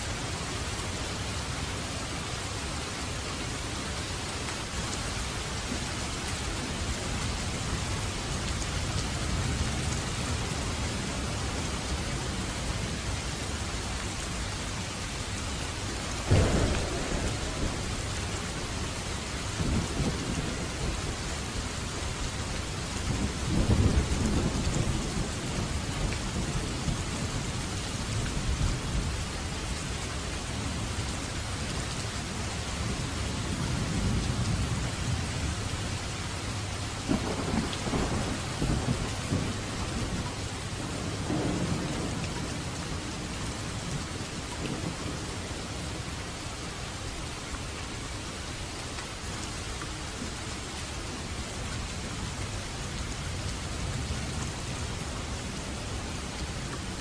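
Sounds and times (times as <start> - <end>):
heavy rain falling: 0.0 - 57.0
low rolling thunder: 16.2 - 30.9, 32.8 - 35.9, 37.0 - 46.1
sharp thunderclap: 16.3 - 21.2, 37.1 - 40.2.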